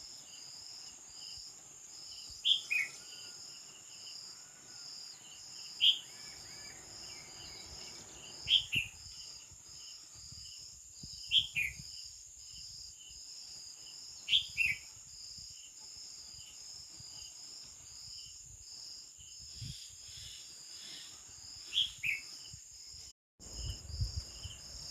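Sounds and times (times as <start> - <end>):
crickets chirping: 0.0 - 24.9
nightingale calling: 1.6 - 10.1, 11.0 - 11.9, 14.1 - 15.0, 19.6 - 22.5.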